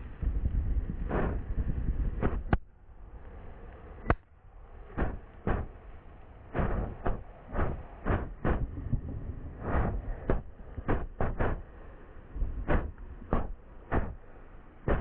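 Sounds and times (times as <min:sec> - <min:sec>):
fireworks bangs: 0:04.9 - 0:05.9, 0:06.5 - 0:11.8, 0:12.4 - 0:15.0.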